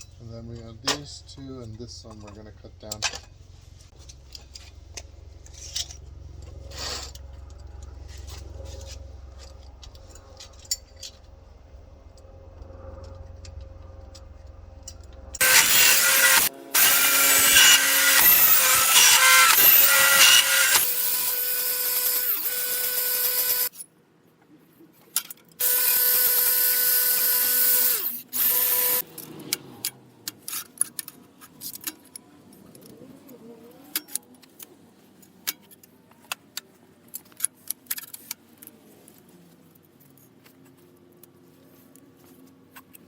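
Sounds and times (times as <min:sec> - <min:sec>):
clicks and metal handling: 0:02.1 - 0:11.4, 0:29.0 - 0:43.0
power tool cutting metal tubing: 0:15.4 - 0:23.7, 0:25.6 - 0:30.0.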